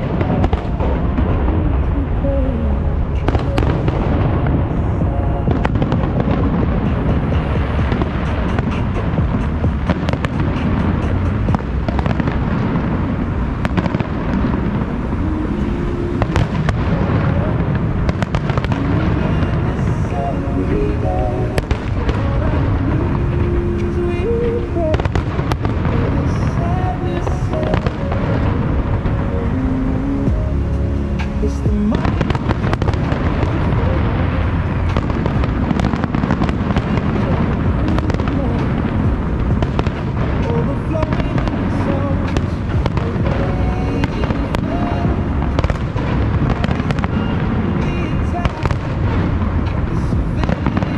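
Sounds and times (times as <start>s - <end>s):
firework crackles and pops: 0.0s - 2.3s, 3.0s - 29.5s, 31.2s - 50.9s
music with held notes: 2.8s - 12.9s, 13.7s - 50.9s
firework shell bursts rumbling: 2.9s - 29.3s.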